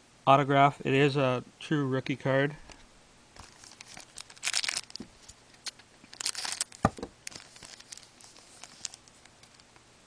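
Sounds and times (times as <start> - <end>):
foil wrapper crinkling and tearing: 3.4 - 9.7.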